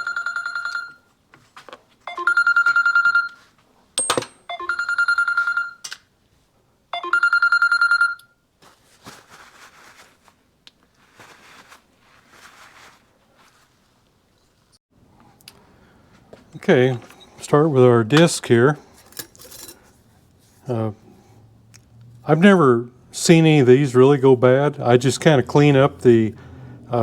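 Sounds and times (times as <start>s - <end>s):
faint handling and rustling: 1.0s - 2.1s, 8.6s - 15.4s, 16.0s - 20.7s.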